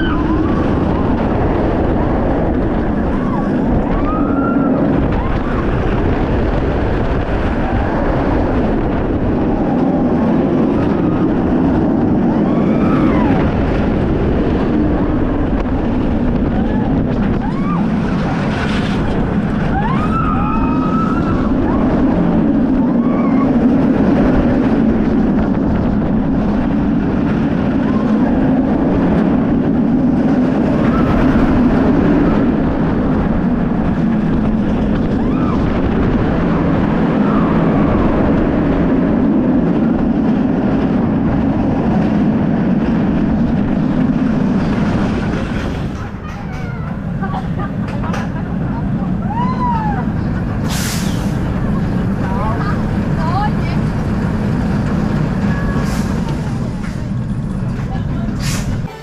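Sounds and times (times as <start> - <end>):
roller coaster train rumbling: 0.0 - 59.0
wind on the microphone: 0.0 - 59.0.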